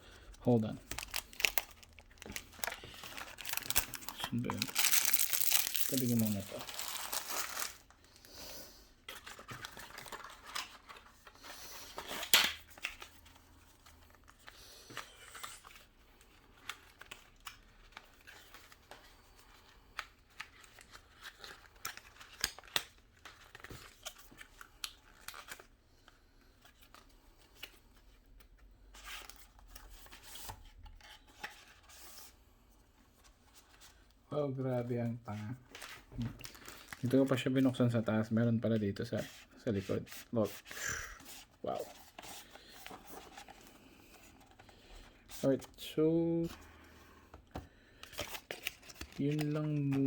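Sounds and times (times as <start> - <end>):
packaging rustling and tearing: 0.2 - 8.2, 9.0 - 13.4, 35.7 - 37.9, 48.0 - 50.0.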